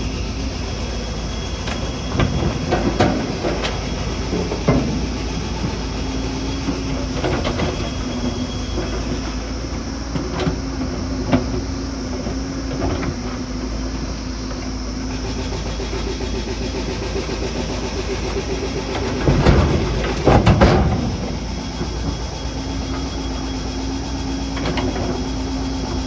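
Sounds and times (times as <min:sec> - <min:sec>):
heavy machine engine running: 0:00.0 - 0:26.0
metallic clanks and knocks: 0:02.1 - 0:09.4, 0:18.4 - 0:23.2.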